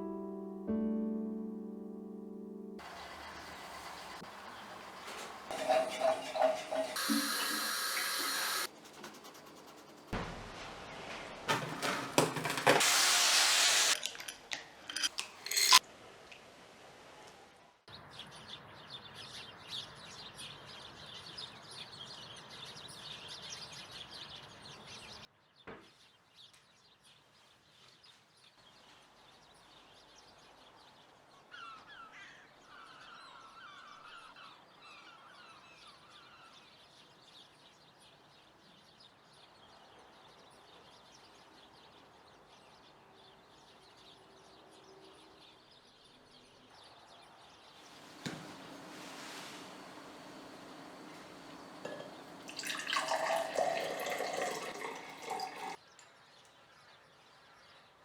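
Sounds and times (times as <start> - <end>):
birds chirping: 2.8 - 8.7, 47.8 - 55.8.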